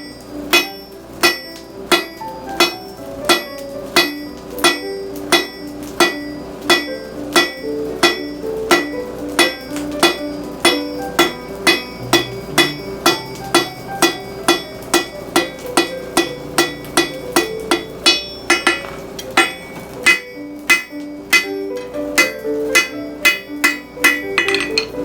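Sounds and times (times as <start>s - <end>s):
hammer striking steel on anvil: 0.0s - 25.0s.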